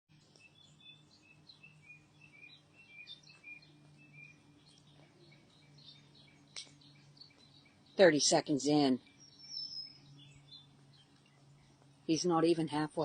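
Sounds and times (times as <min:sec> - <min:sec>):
birds chirping: 0:00.1 - 0:13.0
low steady hum: 0:00.1 - 0:13.0.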